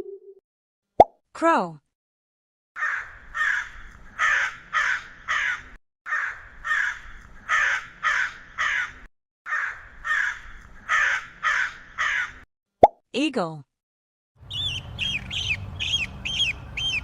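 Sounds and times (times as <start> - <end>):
crow cawing: 2.8 - 12.4.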